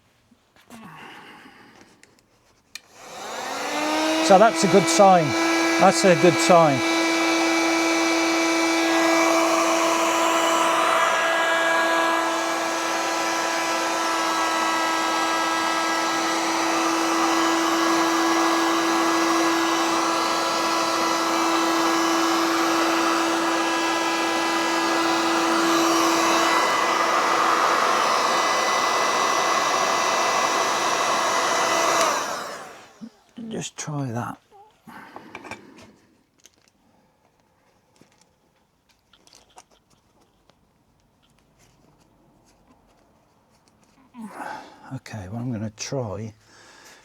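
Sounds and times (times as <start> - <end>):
hot-air gun whining: 2.8 - 33.4.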